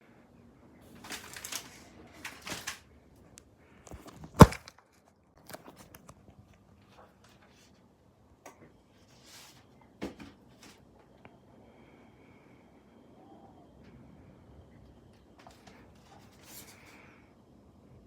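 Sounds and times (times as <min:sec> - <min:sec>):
packaging rustling and tearing: 0:00.9 - 0:02.8, 0:03.9 - 0:04.8, 0:05.4 - 0:06.1.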